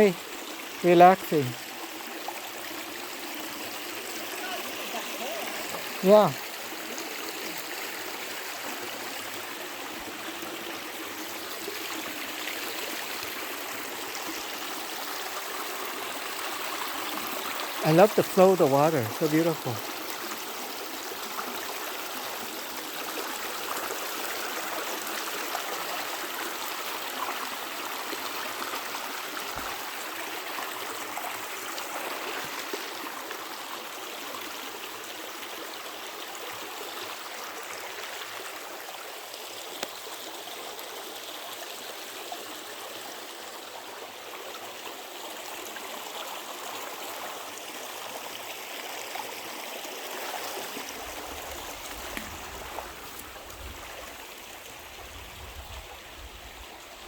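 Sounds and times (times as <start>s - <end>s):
creek flowing over rocks: 0.0s - 57.0s.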